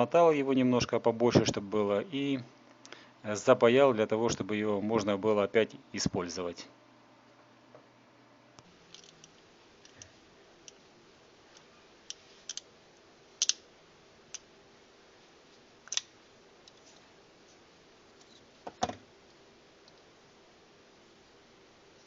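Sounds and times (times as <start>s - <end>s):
small parts and tools clicking: 8.9s - 10.8s, 11.5s - 12.7s, 13.4s - 13.6s, 15.8s - 16.9s.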